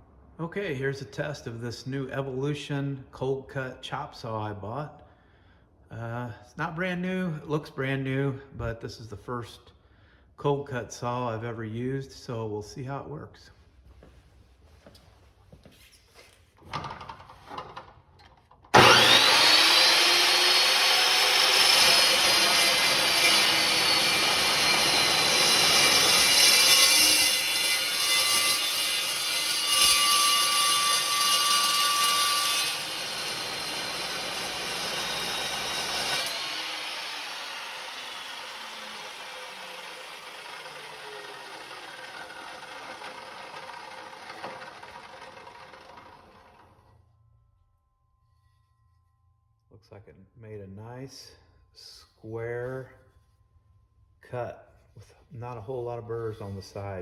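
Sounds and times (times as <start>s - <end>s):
chop saw motor whine: 18.7s - 47.0s
saw blade screeching through metal: 18.8s - 44.5s.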